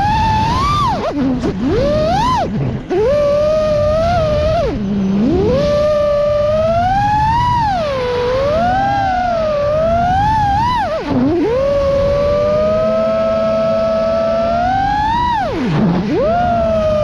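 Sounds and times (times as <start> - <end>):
drone motors whining: 0.0 - 17.0.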